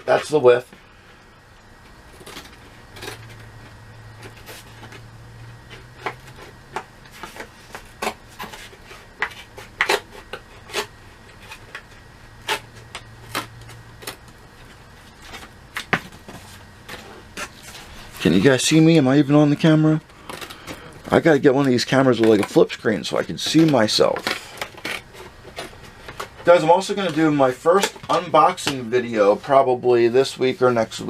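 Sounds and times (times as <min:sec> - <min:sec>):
low steady hum: 0:00.0 - 0:31.0.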